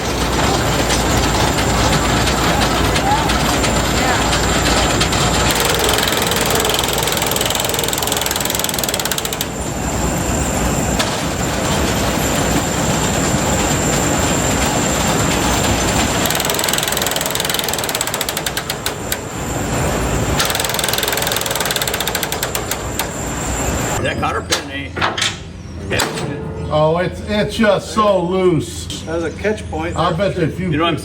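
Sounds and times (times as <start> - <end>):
combine mechanical clatter: 0.0 - 26.5
rapid ratchet-like clicking: 5.4 - 9.6, 16.1 - 19.3, 20.4 - 23.4.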